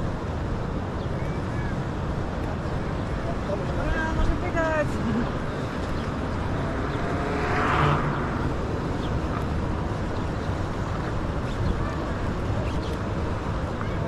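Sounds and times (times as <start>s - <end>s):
road traffic noise: 0.0s - 14.0s
vehicle passing: 4.1s - 11.3s.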